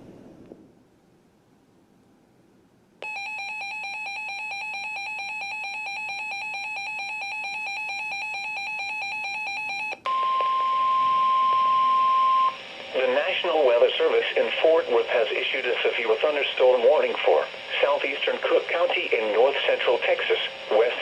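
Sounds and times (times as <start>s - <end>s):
steady warning alarm tone: 3.0s - 21.0s.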